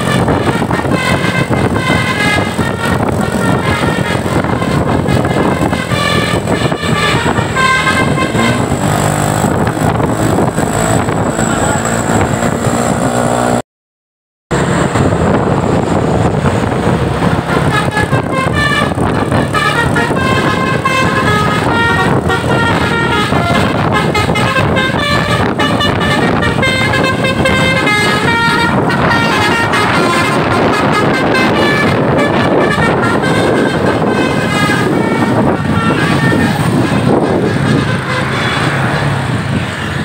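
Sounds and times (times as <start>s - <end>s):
bus musical horn: 0.0s - 13.6s, 14.5s - 40.0s
road and engine noise: 0.0s - 13.6s, 14.5s - 40.0s.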